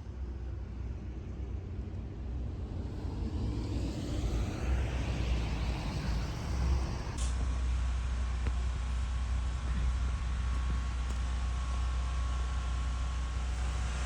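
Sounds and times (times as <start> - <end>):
car engine and road rumble: 0.0 - 14.0.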